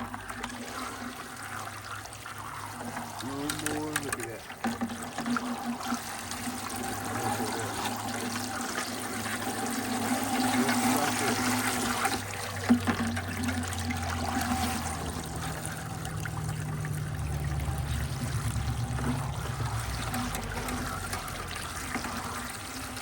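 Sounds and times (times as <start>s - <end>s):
water trickling in bucket: 0.0s - 23.0s
fishing line winding onto reel: 2.5s - 8.0s, 17.9s - 22.9s.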